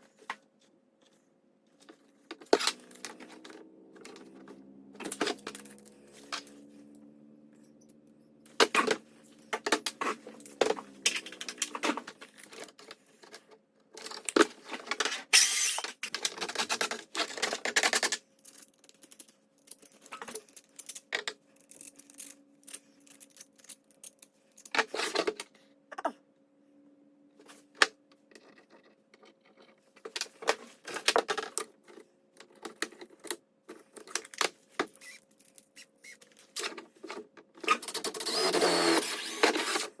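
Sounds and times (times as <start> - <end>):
small hard parts clicking: 32.4 - 36.8.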